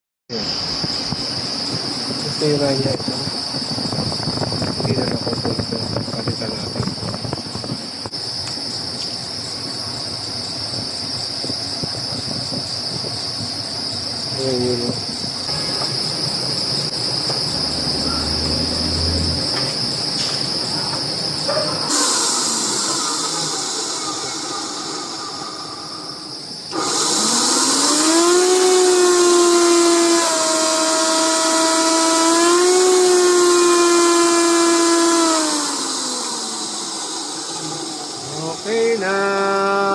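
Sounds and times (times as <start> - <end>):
high-pitched chirring: 13.6 - 39.9
small electric motor whining: 14.2 - 39.9.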